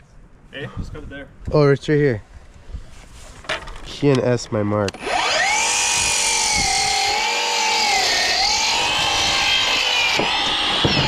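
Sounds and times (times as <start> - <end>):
electric saw cutting wood: 4.9 - 11.0.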